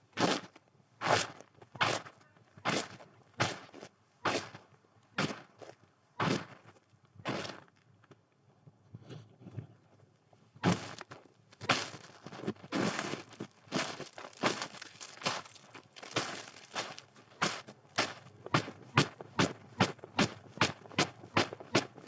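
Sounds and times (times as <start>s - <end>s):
footsteps crunching in snow: 11.7s - 18.3s.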